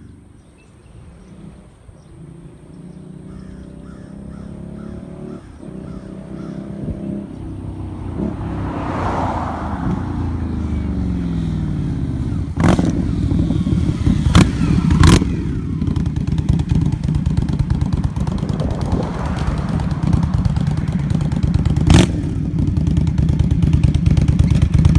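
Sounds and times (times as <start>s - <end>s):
motorcycle engine revving: 0.0s - 24.9s
exhaust cracks: 7.3s - 24.9s.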